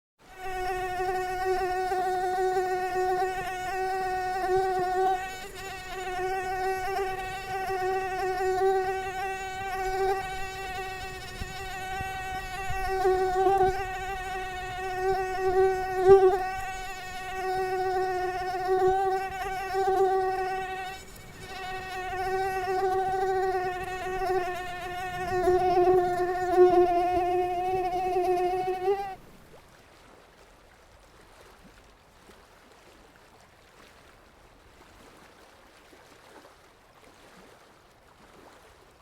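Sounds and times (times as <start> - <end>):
mosquito wingbeat whine: 0.3 - 29.2.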